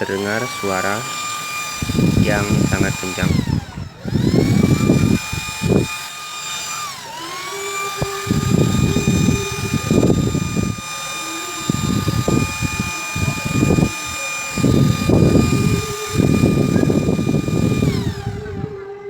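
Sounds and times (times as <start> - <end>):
cooling fan whining: 0.0 - 19.0
low rumbling noise: 1.6 - 6.0, 7.8 - 19.0.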